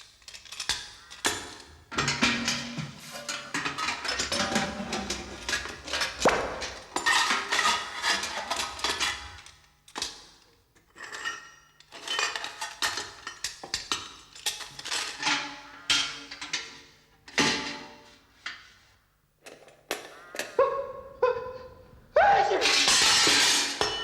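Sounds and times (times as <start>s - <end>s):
cartoon metal clanking: 22.2s - 24.0s.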